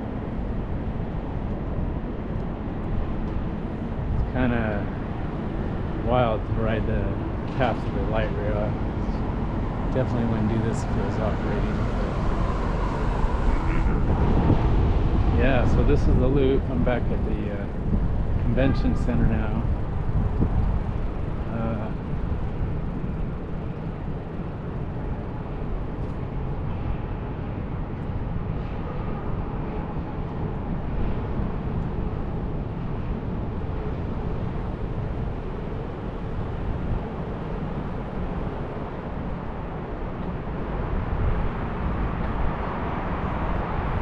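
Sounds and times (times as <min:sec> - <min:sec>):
low rumble of traffic: 0:00.0 - 0:44.0
wind: 0:00.0 - 0:44.0.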